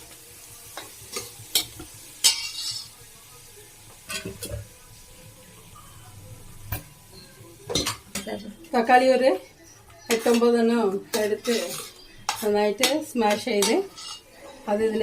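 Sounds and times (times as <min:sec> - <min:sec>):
oil sizzling faintly: 0:00.0 - 0:15.0
spoon scraping pan: 0:00.8 - 0:03.0, 0:09.4 - 0:15.0.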